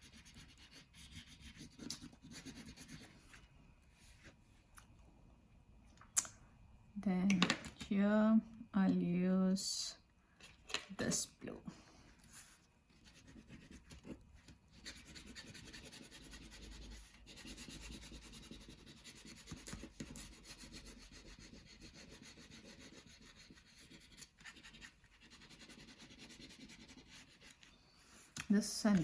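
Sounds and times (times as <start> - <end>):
colouring tool rubbing on paper: 0.0 - 3.3, 12.3 - 27.7.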